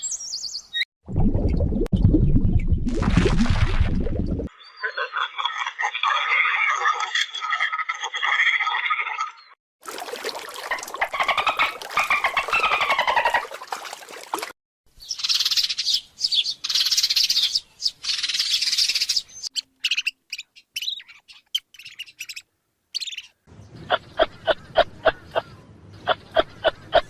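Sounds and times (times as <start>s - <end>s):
bird calls rising and falling: 10.7s - 13.5s
harsh high bird chirping: 15.0s - 22.4s, 23.0s - 27.0s.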